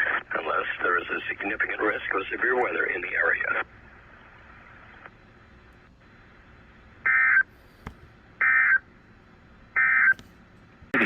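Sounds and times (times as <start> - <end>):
faint radio hiss: 0.0 - 8.5.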